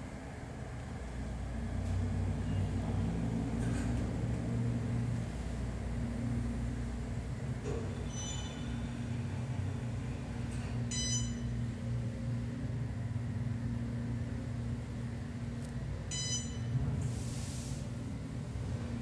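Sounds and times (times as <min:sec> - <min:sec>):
elevator hum: 0:00.0 - 0:19.0
brief hiss: 0:17.0 - 0:17.9.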